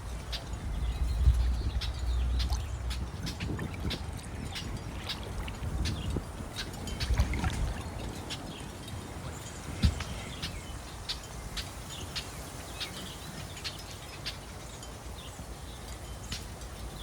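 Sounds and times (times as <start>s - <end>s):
low steady rumble: 0.0s - 8.2s
small bird chirping: 0.3s - 7.2s.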